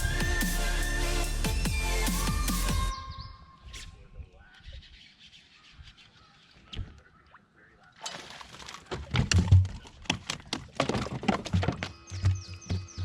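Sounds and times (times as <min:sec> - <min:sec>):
electronic music with thumping beat: 0:00.0 - 0:03.0, 0:12.0 - 0:13.0.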